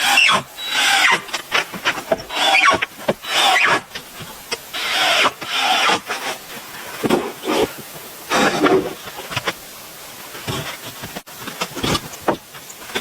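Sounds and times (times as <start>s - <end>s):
hand saw cutting wood: 0.0s - 9.5s.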